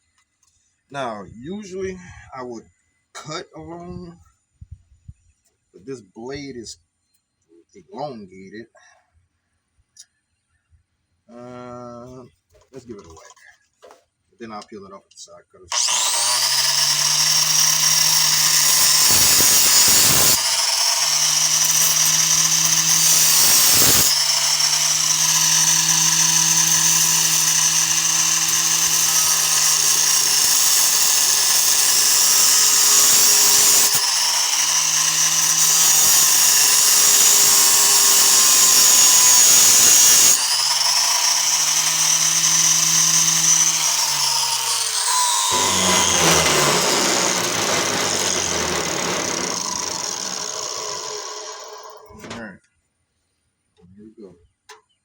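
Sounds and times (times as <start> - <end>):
angle grinder cutting metal: 15.7 - 52.2.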